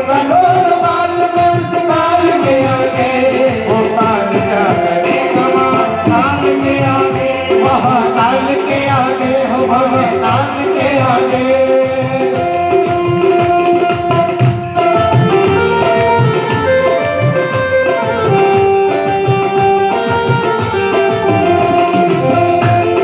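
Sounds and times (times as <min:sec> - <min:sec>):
tabla drumming: 0:00.0 - 0:23.0
sustained melody: 0:12.4 - 0:23.0
wavering melodic line: 0:14.6 - 0:23.0.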